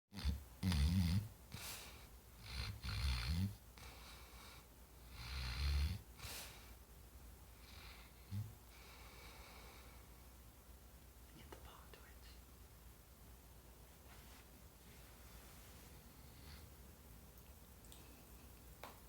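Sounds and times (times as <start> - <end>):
dog snoring: 0.1 - 1.6, 2.4 - 6.3.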